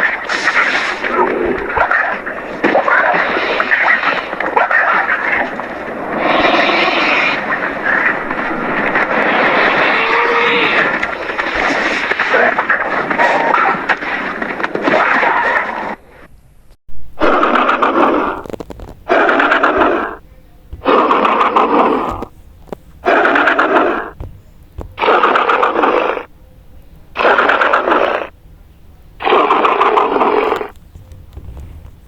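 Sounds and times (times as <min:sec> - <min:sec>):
raspy growling dinosaur calls: 0:09.4 - 0:11.2, 0:17.2 - 0:22.3, 0:23.0 - 0:24.2, 0:25.0 - 0:26.3, 0:27.2 - 0:28.3, 0:29.2 - 0:30.7.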